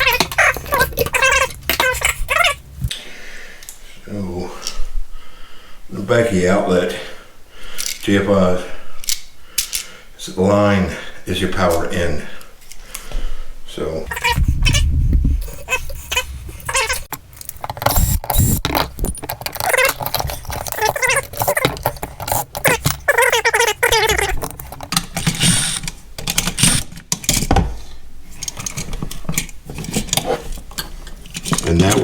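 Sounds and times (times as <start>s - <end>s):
metallic rattling: 14.1s - 27.4s
small clicks: 15.7s - 26.9s.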